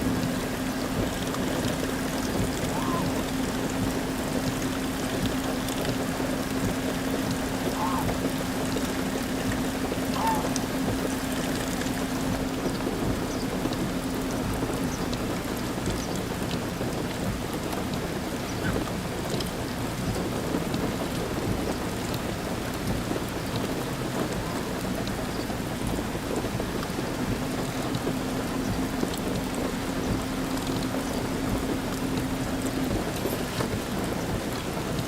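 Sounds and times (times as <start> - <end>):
heavy rain falling: 0.0 - 35.0.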